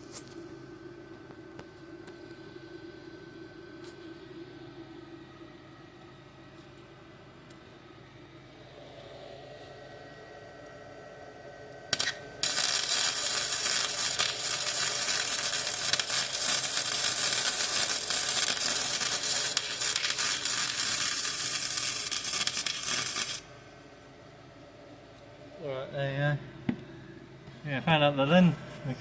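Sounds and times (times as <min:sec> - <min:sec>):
welder arc crackling: 0:11.9 - 0:23.5.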